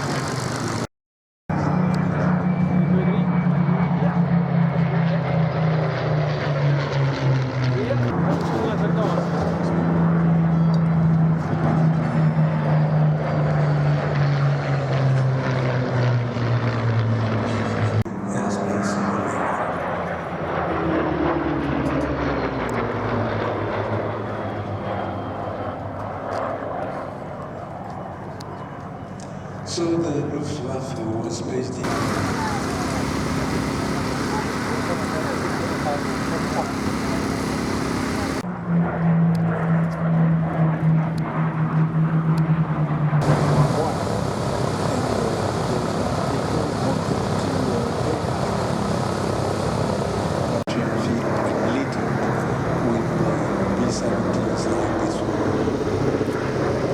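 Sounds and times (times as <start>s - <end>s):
propeller plane flying overhead: 1.5s - 56.9s.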